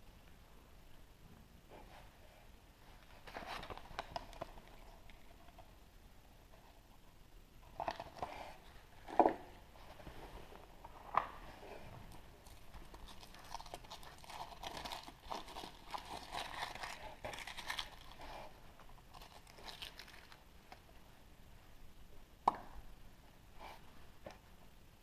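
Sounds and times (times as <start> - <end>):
foil wrapper crinkling and tearing: 12.4 - 18.3, 19.1 - 20.4.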